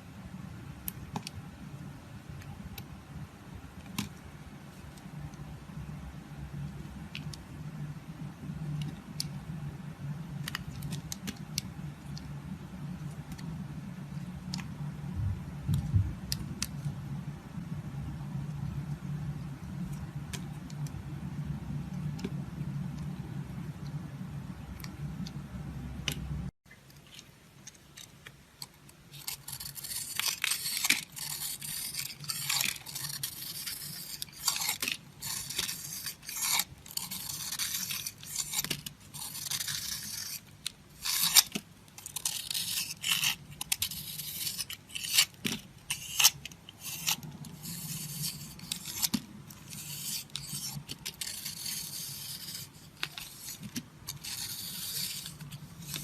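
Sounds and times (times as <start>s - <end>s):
knife scraping soap: 28.0s - 56.0s.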